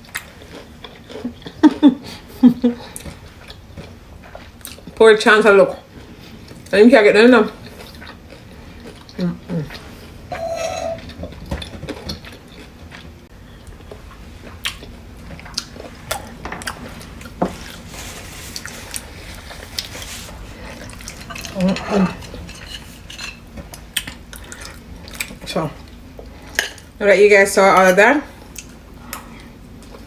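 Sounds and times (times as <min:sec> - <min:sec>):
cutlery clinking on dishes: 0:10.3 - 0:11.2.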